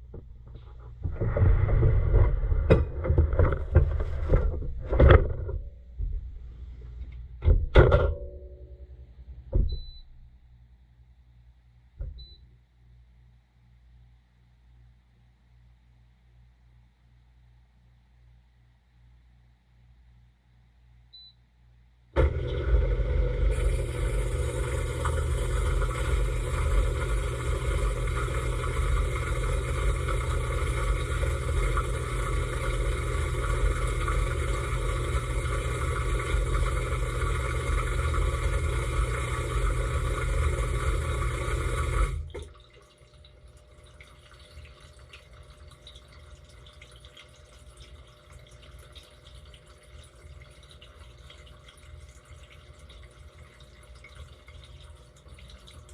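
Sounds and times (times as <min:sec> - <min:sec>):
dishwasher spraying water: 0:22.2 - 0:42.4
motor hum: 0:22.2 - 0:42.5
water dripping and trickling: 0:42.2 - 0:55.9.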